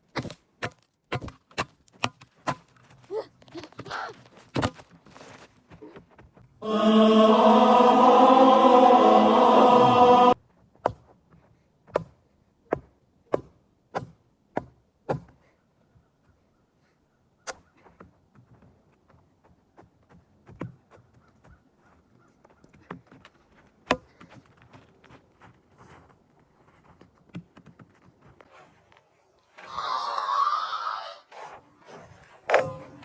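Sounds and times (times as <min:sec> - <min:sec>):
choir-like singing: 0:06.6 - 0:10.4.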